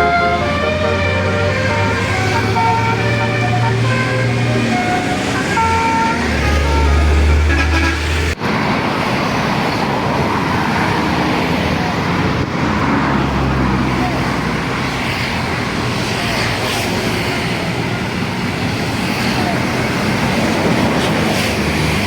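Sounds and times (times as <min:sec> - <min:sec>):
multi-tone bus horn: 0:00.0 - 0:08.4
heavy engine rumble: 0:00.0 - 0:08.7
passing vehicles: 0:00.0 - 0:22.0.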